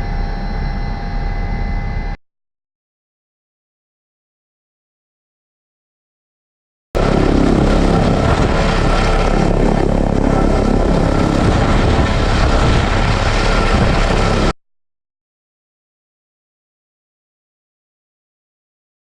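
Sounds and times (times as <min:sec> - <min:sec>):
faint steady whine: 0:00.0 - 0:02.2
helicopter rotor and turbine: 0:00.0 - 0:02.2, 0:07.0 - 0:14.6.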